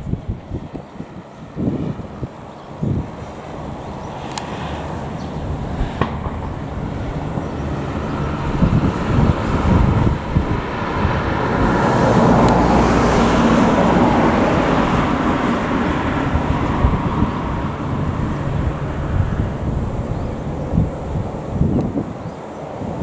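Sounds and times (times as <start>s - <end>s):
vehicle rumbling: 0.0s - 22.3s
low bumps: 4.6s - 21.9s.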